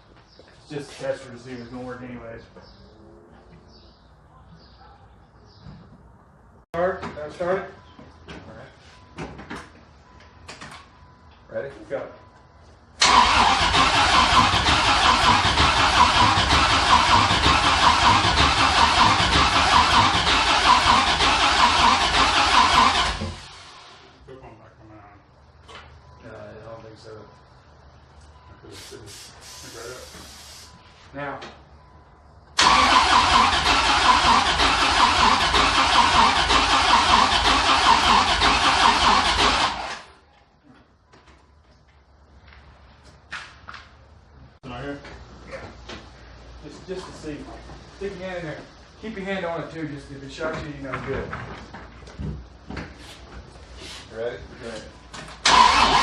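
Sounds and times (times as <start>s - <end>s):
engine cranking on starter: 13.0s - 24.0s, 32.6s - 40.2s, 55.4s - 56.0s.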